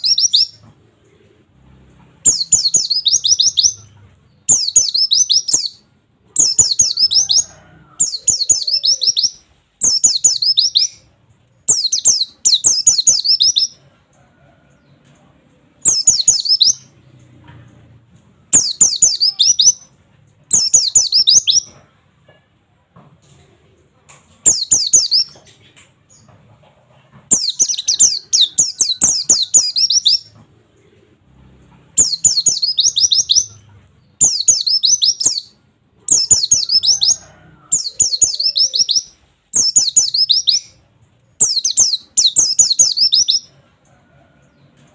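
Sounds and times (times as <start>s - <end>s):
small bird singing rapid high notes: 0.0s - 0.6s, 2.3s - 3.9s, 4.5s - 5.8s, 6.4s - 11.0s, 11.7s - 13.8s, 15.8s - 16.9s, 18.5s - 19.9s, 20.5s - 21.7s, 24.5s - 25.4s, 27.3s - 30.3s, 32.0s - 33.6s, 34.2s - 40.8s, 41.4s - 43.5s.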